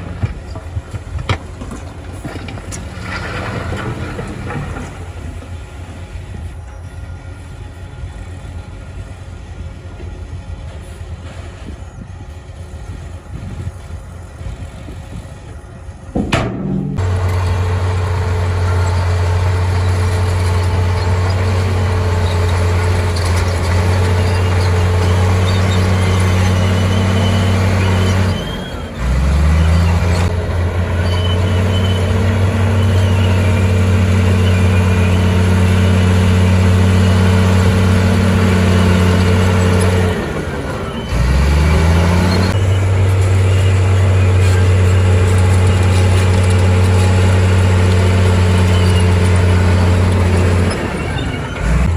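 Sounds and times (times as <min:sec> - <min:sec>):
heavy diesel engine revving: 0:16.8 - 0:51.9.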